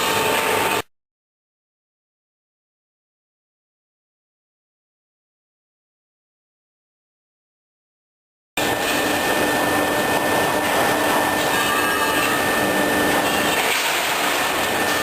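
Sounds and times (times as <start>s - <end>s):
high whine: 8.6s - 15.0s
welding machine mechanical noise: 8.6s - 15.0s.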